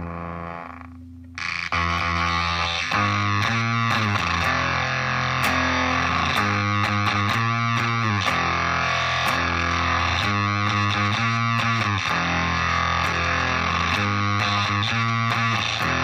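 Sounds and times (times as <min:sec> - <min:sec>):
fuzzed electric guitar notes: 0:00.0 - 0:16.0.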